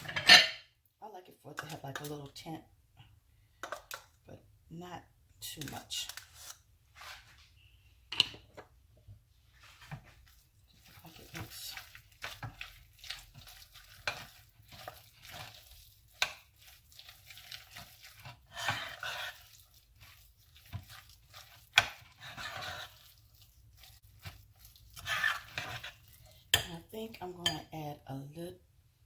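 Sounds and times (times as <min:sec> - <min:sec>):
utensil stirring in a bowl: 0:09.5 - 0:27.8.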